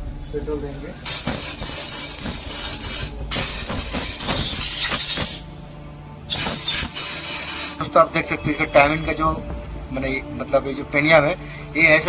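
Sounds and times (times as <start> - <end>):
hissing spray: 1.0 - 5.5, 6.3 - 7.9.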